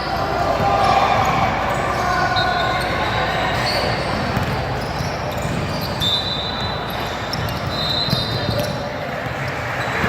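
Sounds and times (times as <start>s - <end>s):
crowd chatter: 0.0s - 10.0s
basketball bouncing on hardwood: 4.4s - 4.6s.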